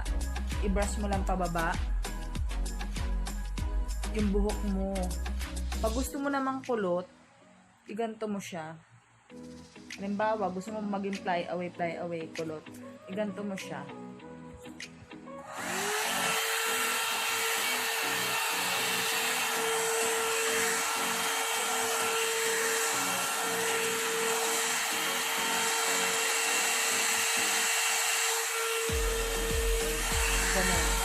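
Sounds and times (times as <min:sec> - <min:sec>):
hair dryer blowing air: 0:15.4 - 0:31.0.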